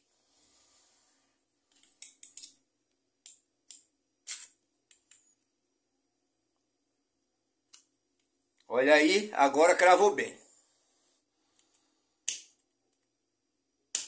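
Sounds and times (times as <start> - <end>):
metal clip clicking and scraping: 1.7 - 2.6.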